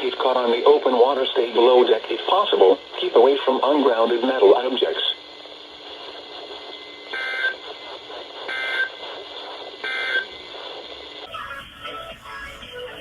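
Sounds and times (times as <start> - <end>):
radio hiss: 0.0 - 13.0
data tone bursts: 6.9 - 7.8, 8.4 - 9.0, 9.8 - 10.6.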